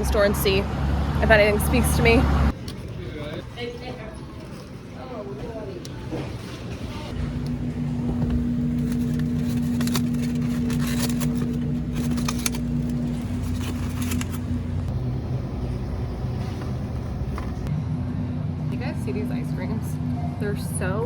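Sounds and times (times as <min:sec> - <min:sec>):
low motor hum: 0:07.0 - 0:21.0.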